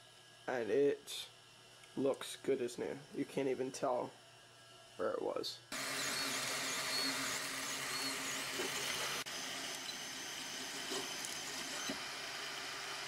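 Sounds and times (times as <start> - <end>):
fan hiss: 0.0 - 10.8
stepper motors whining chirps: 5.8 - 12.2.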